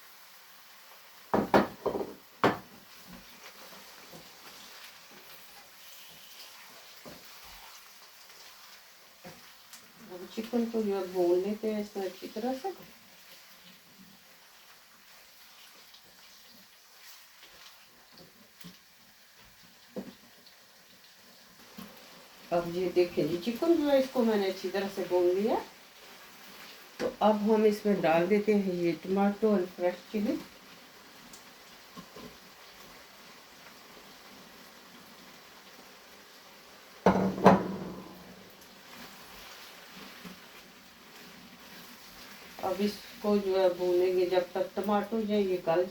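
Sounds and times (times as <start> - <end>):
chicken sizzling in a pan: 0.0 - 45.9
metal knocks on cooking pot: 1.4 - 2.7, 37.1 - 38.4.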